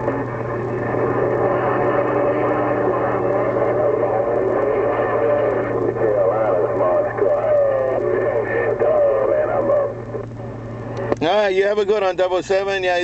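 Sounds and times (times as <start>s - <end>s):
garbled radio signal: 0.0s - 10.3s
radio static: 0.0s - 13.0s
steady hum: 0.0s - 13.0s.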